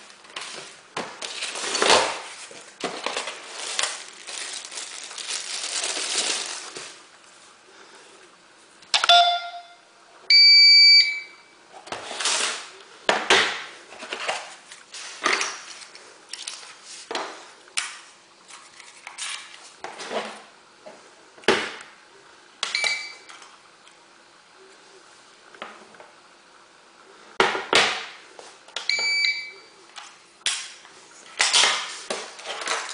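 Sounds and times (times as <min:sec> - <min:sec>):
handling and rustling noises: 0:00.0 - 0:07.6, 0:30.9 - 0:32.9
alarm system beeping: 0:09.0 - 0:11.4.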